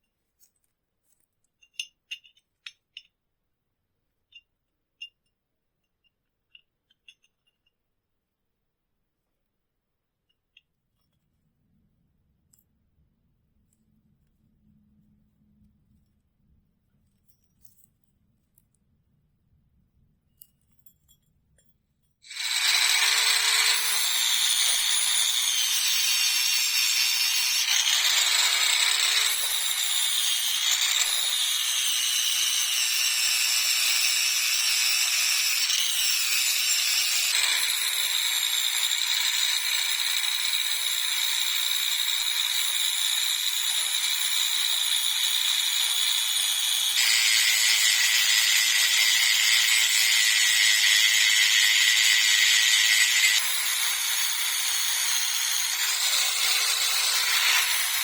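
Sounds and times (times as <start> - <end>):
power tool running under load: 22.3 - 58.0.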